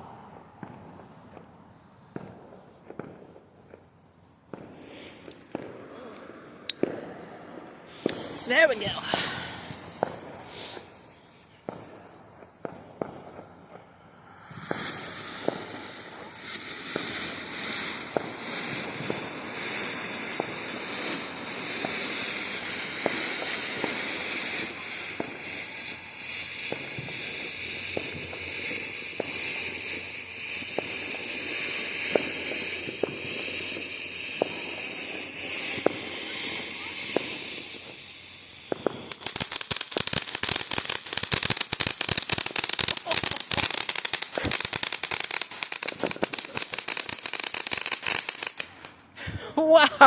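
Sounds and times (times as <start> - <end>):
firework crackling pops: 0.0 - 49.8
hiss of sparks: 7.9 - 49.2.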